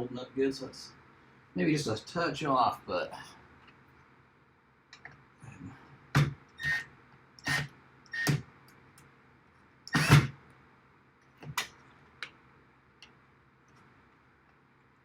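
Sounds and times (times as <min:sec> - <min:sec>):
knocks and clatters of tools: 0:06.1 - 0:06.8, 0:11.4 - 0:11.8.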